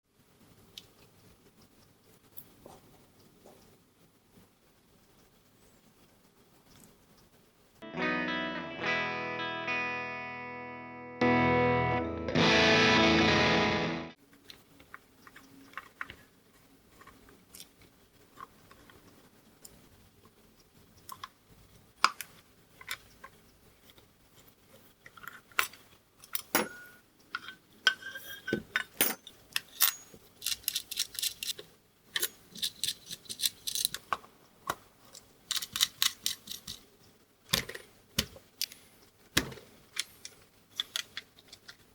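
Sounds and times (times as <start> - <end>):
distorted electric guitar chords: 7.8 - 14.2.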